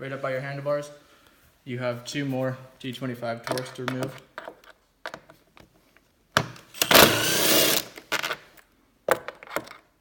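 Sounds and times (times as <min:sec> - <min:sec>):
cordless drill whirring: 0:06.8 - 0:08.0.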